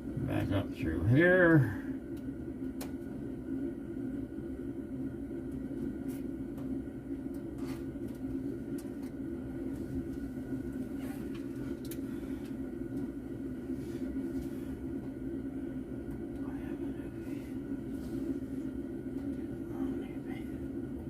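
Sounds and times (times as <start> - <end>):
electric fan motor humming: 0.0 - 21.0
wiring clicks and rustles: 7.3 - 13.2.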